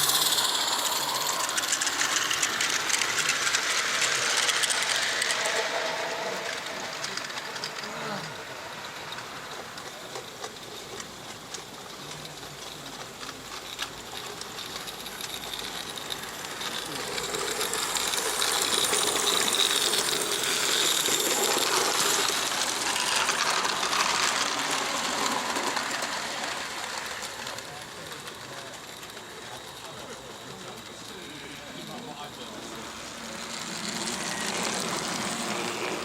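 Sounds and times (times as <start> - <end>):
model steam locomotive chuffing: 0.0 - 36.0.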